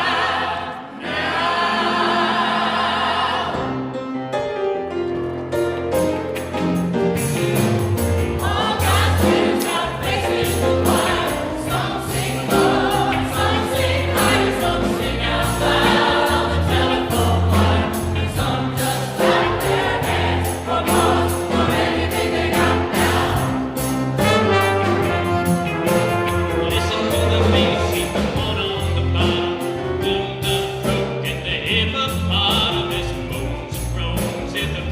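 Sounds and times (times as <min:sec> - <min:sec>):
choir singing with accompaniment: 0:00.0 - 0:04.2, 0:07.3 - 0:34.7.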